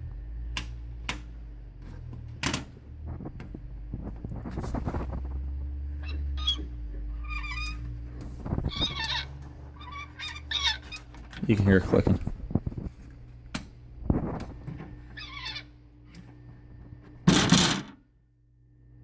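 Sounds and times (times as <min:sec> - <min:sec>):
humidifier motor humming: 0:00.0 - 0:19.0
high chirping calls: 0:06.0 - 0:07.8.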